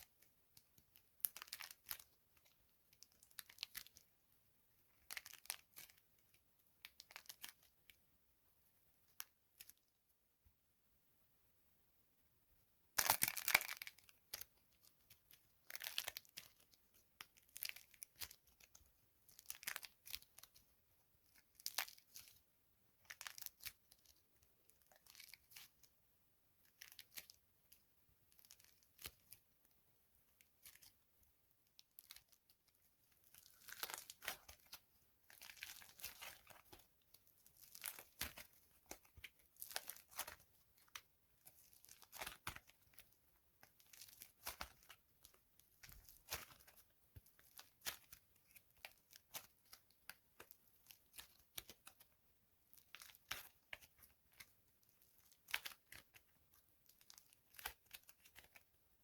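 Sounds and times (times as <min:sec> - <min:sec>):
soap crunching and crumbling: 0:13.0 - 0:20.6, 0:26.7 - 0:27.4, 0:31.7 - 0:58.8.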